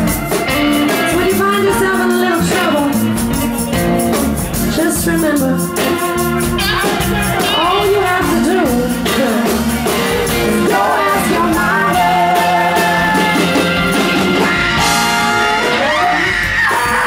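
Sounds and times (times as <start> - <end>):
live rock band playing: 0.0 - 17.0
person singing lead: 6.8 - 14.0.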